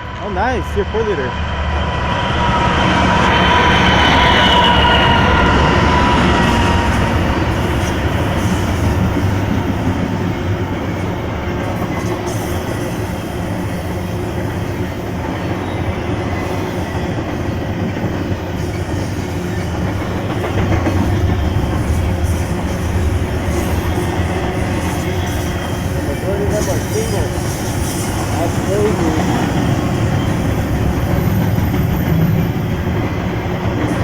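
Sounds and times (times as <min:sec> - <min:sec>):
freight train rumbling past: 0:00.0 - 0:34.0
wheels clacking over rail joints: 0:05.9 - 0:34.0.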